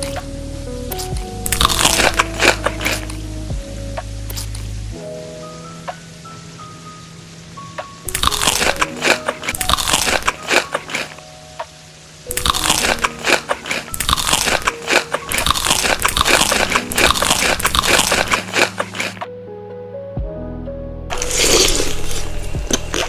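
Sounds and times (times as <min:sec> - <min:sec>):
soft background music with mallets: 0:00.0 - 0:18.6, 0:19.3 - 0:23.0
crunchy food chewing: 0:01.0 - 0:03.1, 0:08.1 - 0:11.2, 0:12.3 - 0:19.2, 0:21.1 - 0:23.0.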